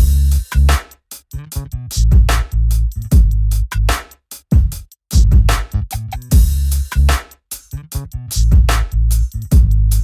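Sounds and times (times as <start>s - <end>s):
electronic music with heavy bass: 0.0s - 0.8s.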